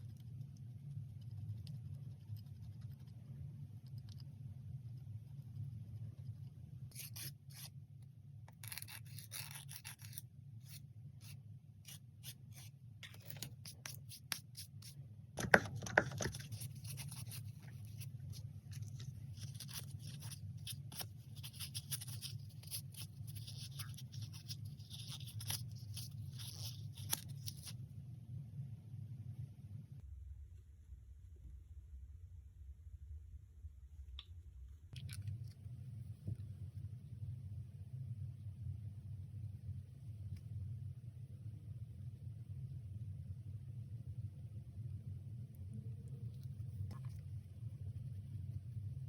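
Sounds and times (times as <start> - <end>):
steady low hum: 0.0 - 49.0
manicure tool scraping fingernails: 8.5 - 18.1.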